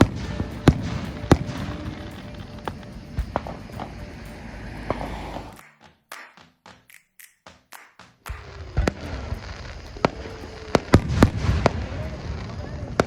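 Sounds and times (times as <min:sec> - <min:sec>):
fireworks banging and crackling: 0:00.0 - 0:04.1, 0:08.2 - 0:13.0
falling firework whistle: 0:00.0 - 0:05.6, 0:08.3 - 0:13.0
faint firework pops: 0:08.3 - 0:13.0.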